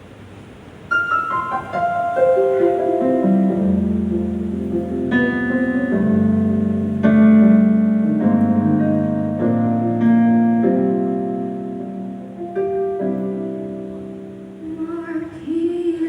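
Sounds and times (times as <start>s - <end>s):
keyboard playing slow chords: 0.9s - 14.8s.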